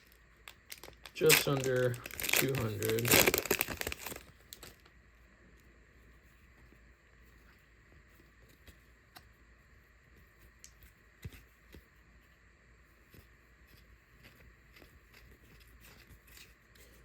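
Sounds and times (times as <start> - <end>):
light clicks of card packs: 0.4 - 4.8.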